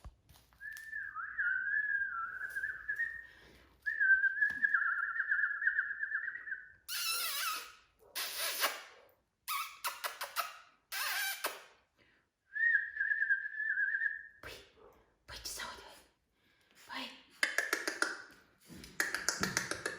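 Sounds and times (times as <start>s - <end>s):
person whistling: 0.6s - 3.3s, 3.9s - 6.8s, 12.5s - 14.4s.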